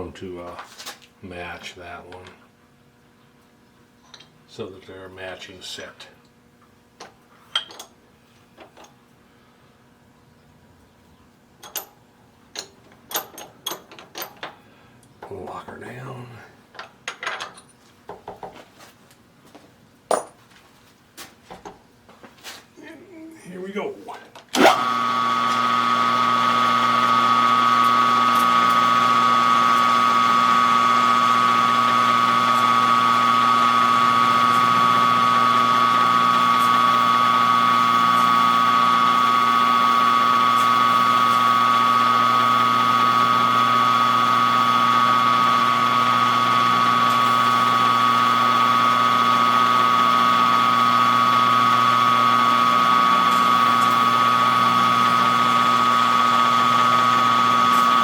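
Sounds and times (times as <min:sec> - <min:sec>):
machine tool motor whining: 0:24.5 - 0:58.0.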